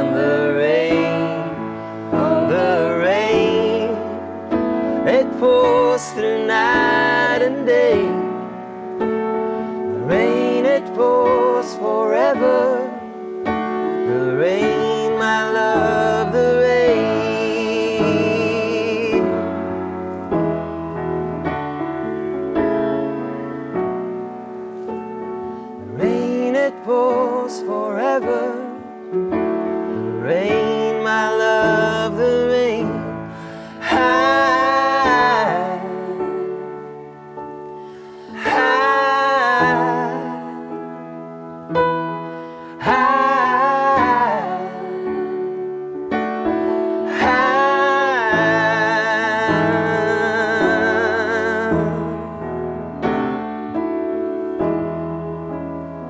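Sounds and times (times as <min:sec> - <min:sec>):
person singing wordless notes: 0:00.0 - 0:23.5, 0:25.5 - 0:55.3
piano chords: 0:00.0 - 0:56.0.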